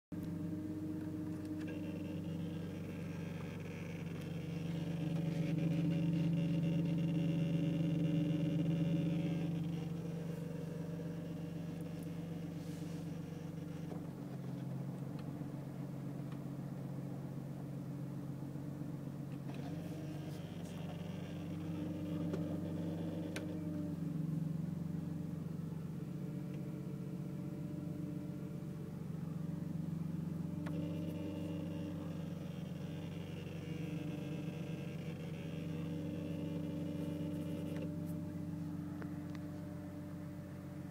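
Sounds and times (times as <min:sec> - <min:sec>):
electrical dashboard hum: 0:00.1 - 0:40.9
higher electrical buzz: 0:00.2 - 0:14.6.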